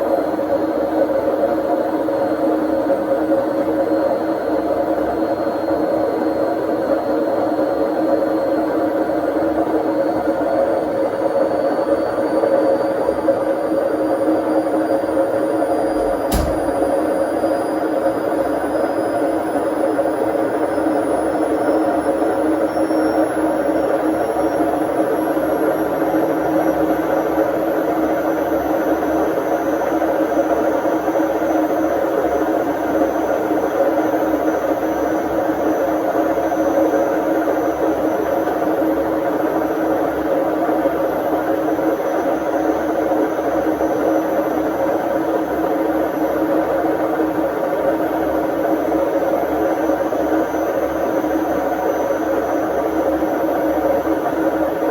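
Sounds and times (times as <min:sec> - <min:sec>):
washing machine whirring: 0:15.5 - 0:17.2.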